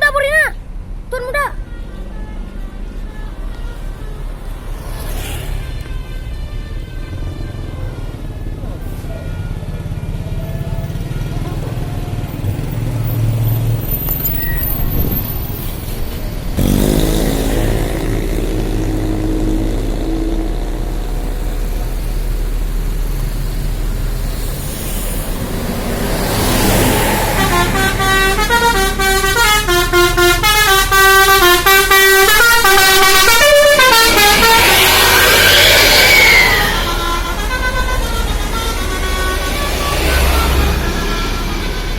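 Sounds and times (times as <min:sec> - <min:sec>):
vehicle noise: 0:00.0 - 0:41.9
bus horn playing tune: 0:25.9 - 0:41.9
hiss with gliding tone: 0:33.8 - 0:37.4.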